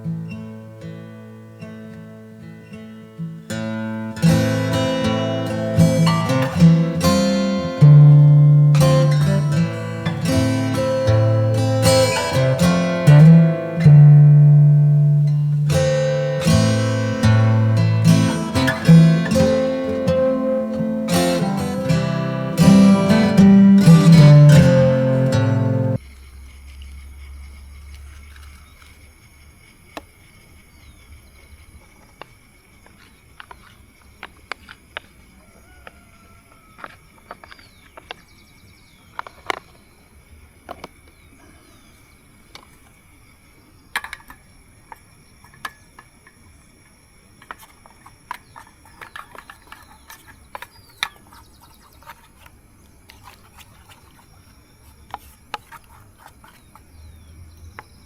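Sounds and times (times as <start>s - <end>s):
insects calling: 0.0s - 58.0s.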